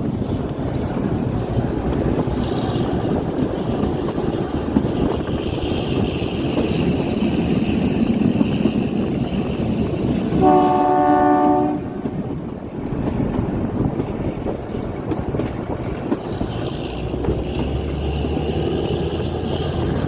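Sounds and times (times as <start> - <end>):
train rumbling: 0.0 - 20.0
train horn blast: 10.3 - 12.1.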